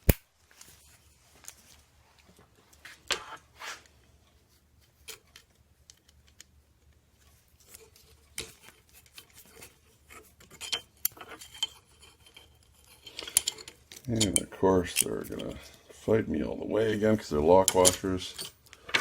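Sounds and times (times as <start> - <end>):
small metal hardware clinking: 10.5 - 15.8, 17.6 - 19.0.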